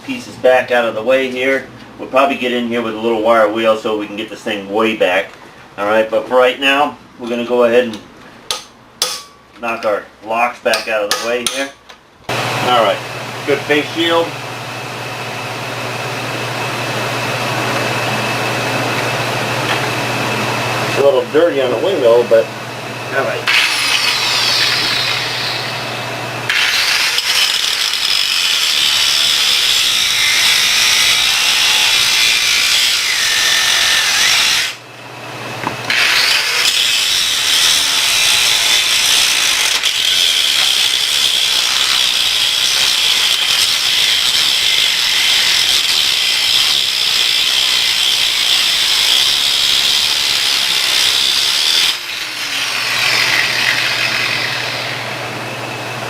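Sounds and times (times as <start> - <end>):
power grinder on steel: 23.4 - 34.8, 35.9 - 55.3.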